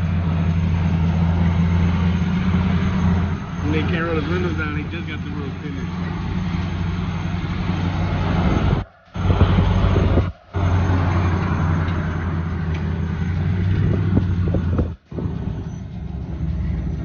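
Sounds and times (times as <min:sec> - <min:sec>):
road noise: 0:00.0 - 0:17.0
vehicle engine drone: 0:00.0 - 0:17.0.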